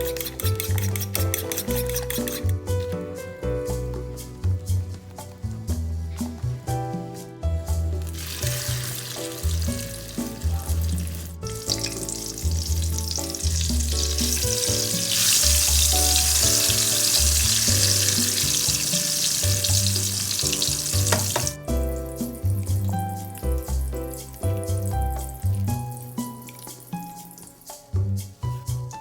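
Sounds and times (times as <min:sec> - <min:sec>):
background music: 0:00.0 - 0:29.0
food sizzling in a pan: 0:08.0 - 0:28.8.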